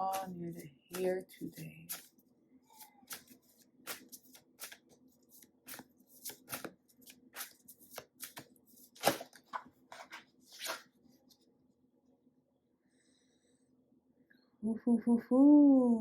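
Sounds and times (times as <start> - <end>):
cards being shuffled: 0.0 - 10.9.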